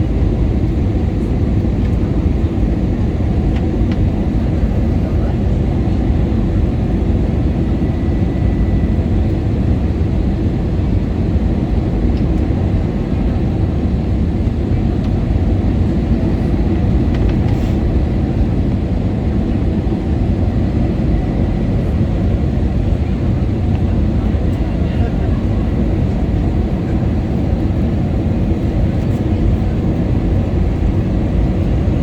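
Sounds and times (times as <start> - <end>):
aircraft engines rumbling: 0.0 - 32.0
air rushing in cabin: 16.1 - 18.5.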